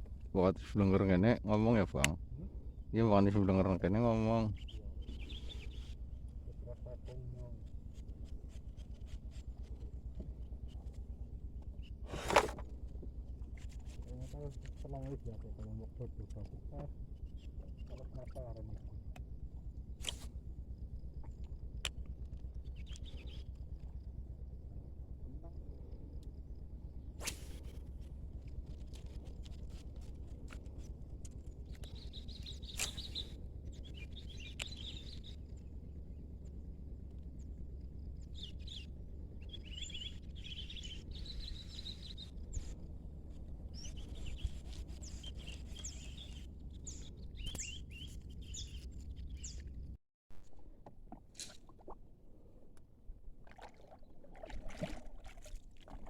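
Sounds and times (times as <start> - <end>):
steady low rumble: 0.0 - 51.1
birds chirping: 2.5 - 9.0, 15.0 - 19.2, 22.5 - 24.2, 30.7 - 36.6, 37.4 - 49.8.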